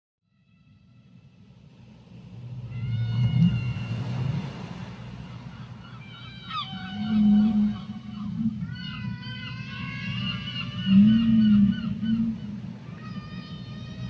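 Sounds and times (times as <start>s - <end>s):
low whale moan: 2.4s - 4.8s, 5.6s - 14.0s
thin higher whale tones: 2.5s - 14.0s
high whale call sweeping downward: 2.6s - 4.8s, 5.8s - 14.0s.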